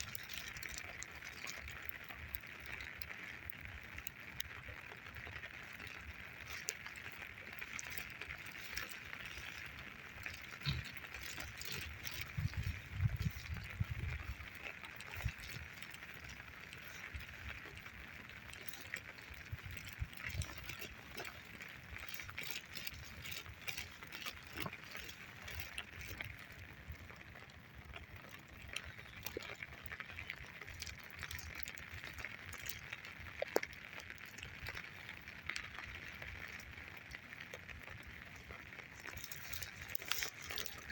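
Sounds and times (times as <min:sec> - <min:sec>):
footsteps on wet forest ground: 0:05.0 - 0:33.0.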